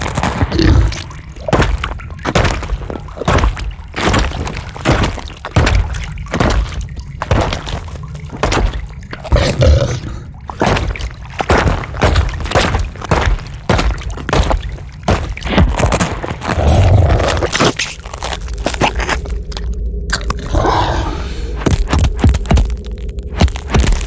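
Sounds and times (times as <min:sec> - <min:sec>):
wet crunches cracks and thuds: 0:00.0 - 0:09.9, 0:10.5 - 0:20.4, 0:21.6 - 0:24.0
steady low rumble: 0:12.3 - 0:24.0.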